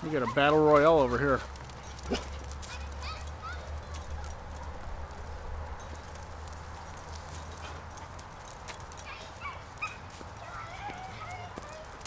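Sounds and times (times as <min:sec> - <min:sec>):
dogs scuffling: 0:00.0 - 0:12.0
dog yelps: 0:09.0 - 0:12.0.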